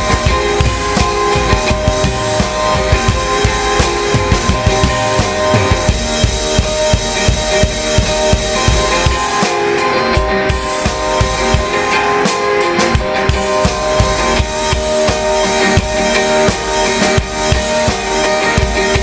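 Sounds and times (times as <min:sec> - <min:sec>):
bass drum hits: 0:00.0 - 0:09.0
drum kit steady beat: 0:00.0 - 0:19.0
sustained guitar chords: 0:00.0 - 0:19.0.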